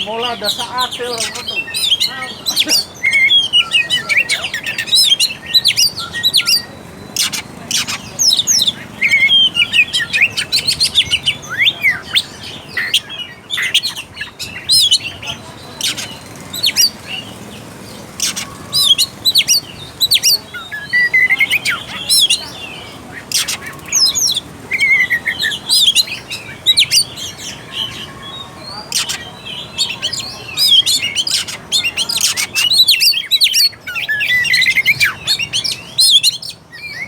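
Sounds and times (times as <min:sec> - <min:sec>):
bird singing whistled phrases: 0:01.2 - 0:17.3, 0:18.2 - 0:37.0.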